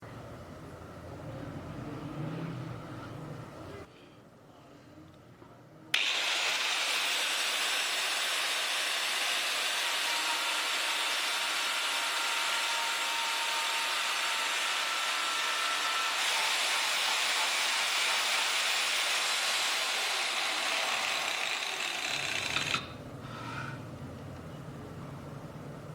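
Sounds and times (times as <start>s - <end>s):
angle grinder whine: 6.0s - 23.7s.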